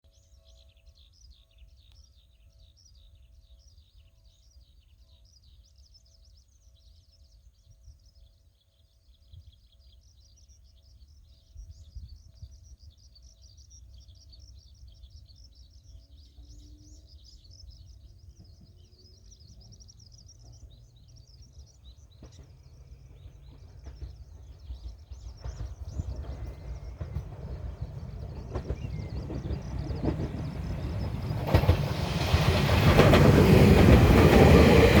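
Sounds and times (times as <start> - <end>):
small birds chirping: 0.2 - 35.0
electric train rumble: 10.9 - 35.0
wind buffeting microphone: 20.6 - 35.0.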